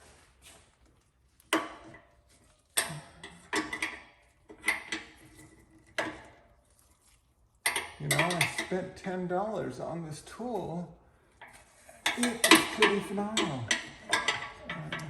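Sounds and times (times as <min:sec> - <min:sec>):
metal tools clanking: 0:07.7 - 0:09.2, 0:11.4 - 0:15.0.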